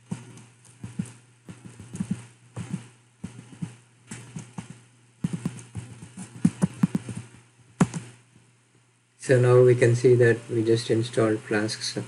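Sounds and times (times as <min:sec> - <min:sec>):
typing on a computer keyboard: 0:00.0 - 0:08.0
steady low hum: 0:00.0 - 0:12.0.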